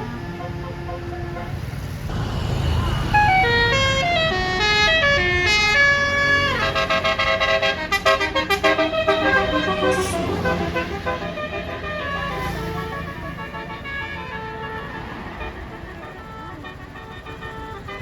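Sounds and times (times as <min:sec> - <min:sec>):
musical air horn melody: 0:00.0 - 0:02.1, 0:03.2 - 0:18.0
low engine rumble: 0:00.0 - 0:18.0.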